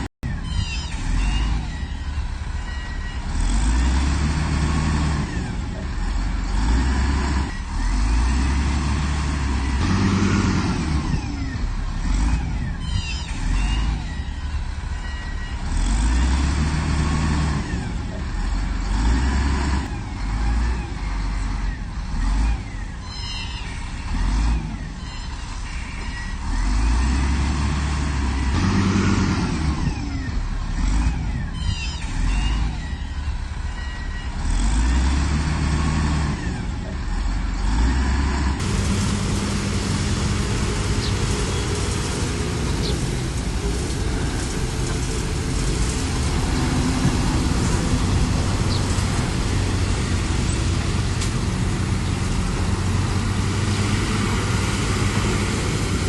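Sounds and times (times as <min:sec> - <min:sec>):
diesel engine revving: 0:00.0 - 0:56.0
high-pitched metallic squeaks: 0:00.3 - 0:03.5, 0:12.6 - 0:15.8, 0:22.8 - 0:26.9, 0:31.4 - 0:34.6.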